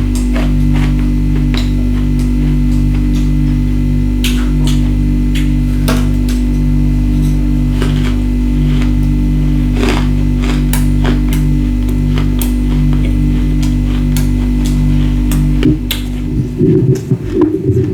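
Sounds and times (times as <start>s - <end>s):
low background drone: 0.0s - 17.9s
ice crunched in mouth: 7.2s - 11.4s.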